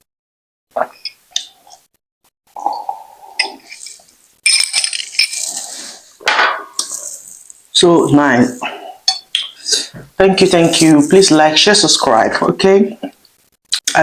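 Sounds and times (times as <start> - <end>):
dishes clinking: 2.6 - 7.1, 8.8 - 9.6
tableware clattering and handling: 3.4 - 7.5.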